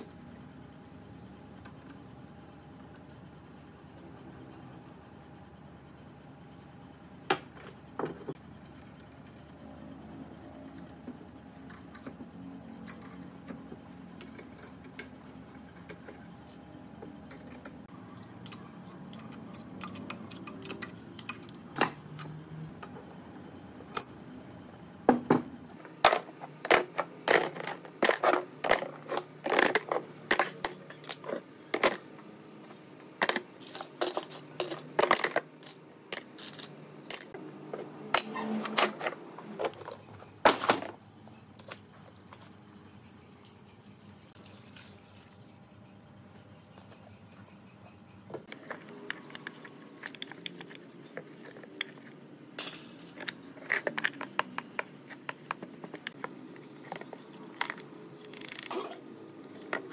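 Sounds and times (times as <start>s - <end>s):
small metal parts clinking: 26.0s - 32.1s, 33.2s - 37.4s, 38.1s - 41.8s, 48.5s - 59.9s.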